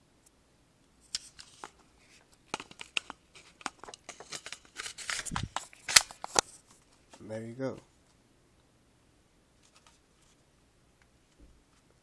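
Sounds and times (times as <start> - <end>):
packaging crinkling: 2.5 - 6.5.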